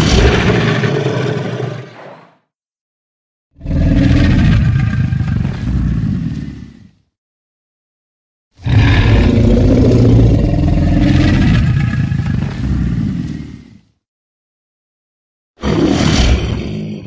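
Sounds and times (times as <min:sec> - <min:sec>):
deep dinosaur roar: 0:00.0 - 0:02.3, 0:03.6 - 0:07.0, 0:08.6 - 0:13.8.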